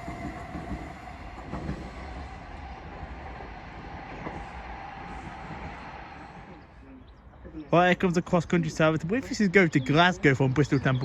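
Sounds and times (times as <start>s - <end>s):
train wheels rumbling on rail: 0.0s - 7.4s.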